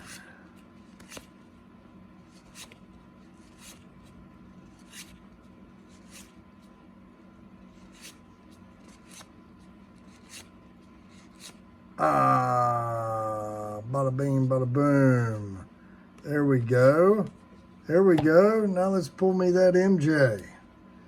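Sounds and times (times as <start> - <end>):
low steady hum: 0.0 - 21.0
trading cards flicking: 0.8 - 1.4, 2.4 - 2.9, 4.7 - 5.2, 7.8 - 9.4, 10.0 - 11.6
card stock snapping: 1.0 - 1.3.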